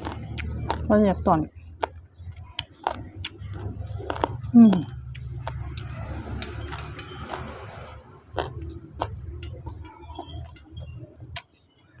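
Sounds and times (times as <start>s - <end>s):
utensils clinking against dish: 4.5s - 8.8s, 9.4s - 11.4s.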